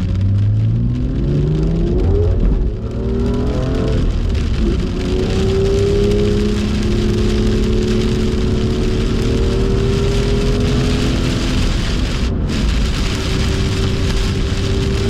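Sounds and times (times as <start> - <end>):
heavy rain and tyre spray: 0.0 - 15.0.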